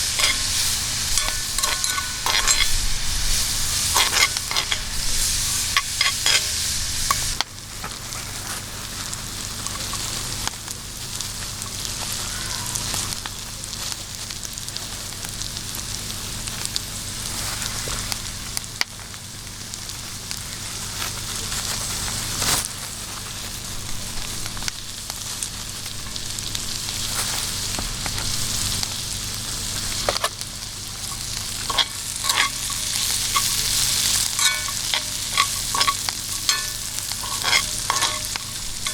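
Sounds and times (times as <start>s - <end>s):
utensil clicking against pan: 0.0s - 7.5s, 31.0s - 38.9s
food frying in hot oil: 0.0s - 38.9s.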